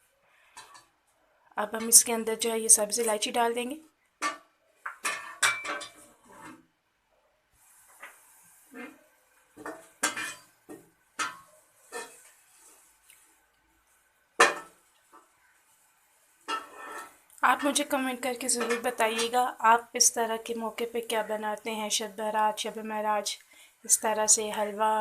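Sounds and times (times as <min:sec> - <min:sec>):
metal spoon clinking on pot: 0:09.7 - 0:10.5, 0:18.6 - 0:19.3.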